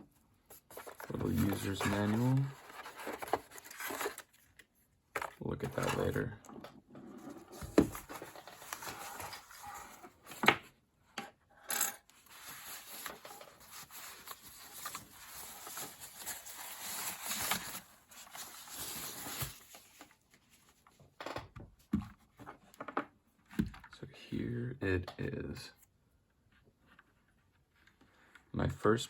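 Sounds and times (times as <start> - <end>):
packaging rustling: 0.5 - 4.6, 7.6 - 10.1, 12.2 - 20.2.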